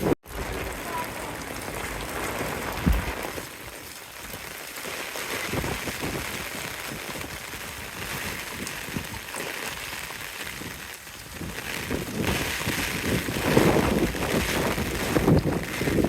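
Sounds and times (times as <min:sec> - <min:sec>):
heavy rain: 0:00.0 - 0:16.0
sharp low thump: 0:02.8 - 0:03.2.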